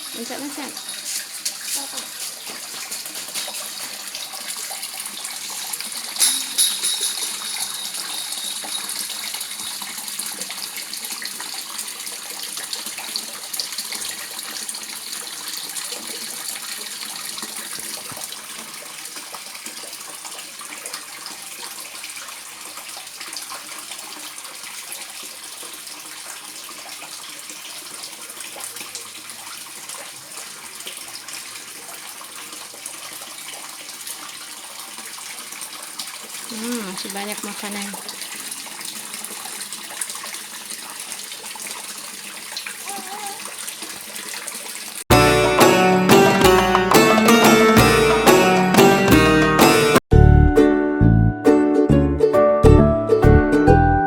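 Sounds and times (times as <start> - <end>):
water splashing into pond: 0.0 - 48.5.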